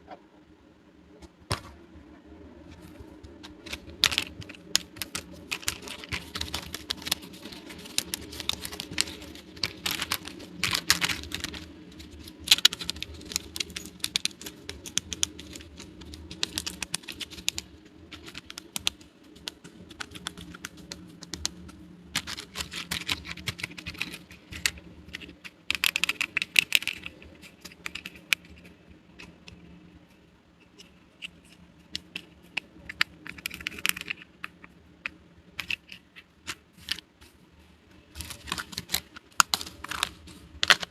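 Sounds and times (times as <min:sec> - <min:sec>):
plastic toy pieces clicking: 0:03.5 - 0:29.6, 0:30.6 - 0:37.0.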